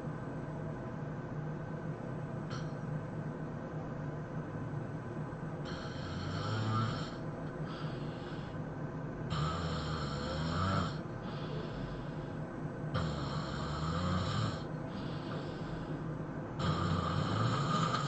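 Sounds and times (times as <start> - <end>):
person snoring loudly: 5.7 - 8.4, 9.3 - 11.8, 13.0 - 15.5, 16.6 - 18.0.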